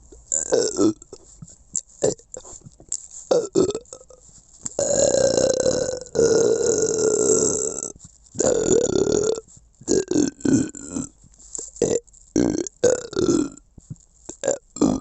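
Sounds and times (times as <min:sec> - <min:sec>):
person belching: 0:00.3 - 0:01.2, 0:02.0 - 0:02.5, 0:03.3 - 0:04.2, 0:04.8 - 0:11.1, 0:11.8 - 0:13.6, 0:14.3 - 0:15.0.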